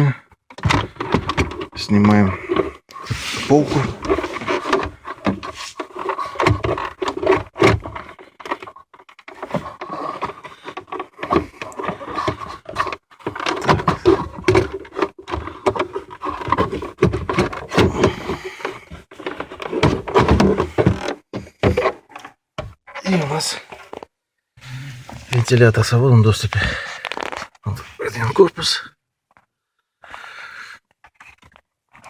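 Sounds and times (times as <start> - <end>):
plastic trim scraping and knocking: 0.5 - 23.0, 26.4 - 27.6.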